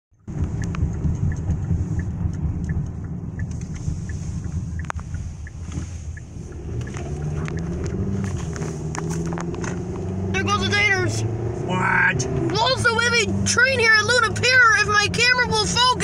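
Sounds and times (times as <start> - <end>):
vehicle rumble: 0.1 - 16.0
light ticks: 0.3 - 9.7.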